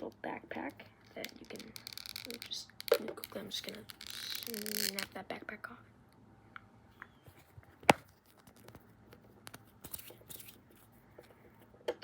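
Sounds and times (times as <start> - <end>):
plastic figure clicks and rustles: 0.0 - 5.2.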